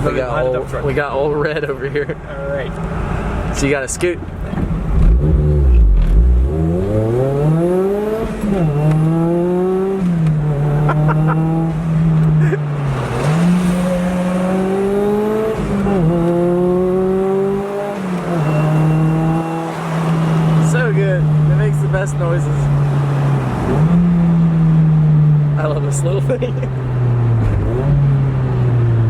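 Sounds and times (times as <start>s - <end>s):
car engine accelerating: 4.2s - 29.0s.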